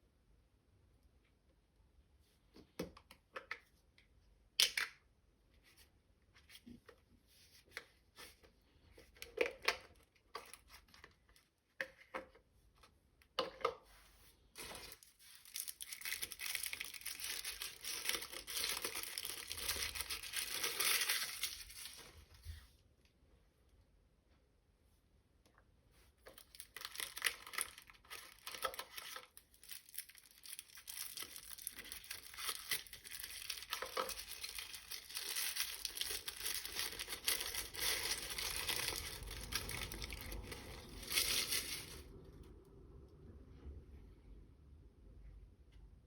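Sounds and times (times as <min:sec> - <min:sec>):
packaging crinkling and clicking: 0:14.6 - 0:22.1, 0:26.3 - 0:42.0
packaging tearing and rustling: 0:14.6 - 0:22.2, 0:26.3 - 0:42.1.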